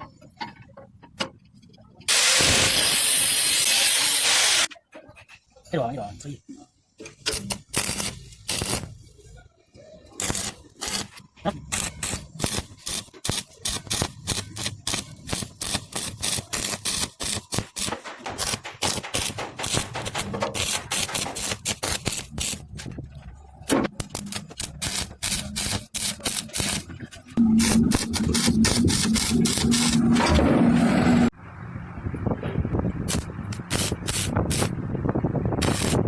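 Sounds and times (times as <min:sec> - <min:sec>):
sharp clicks and knocks: 0:17.2 - 0:23.0.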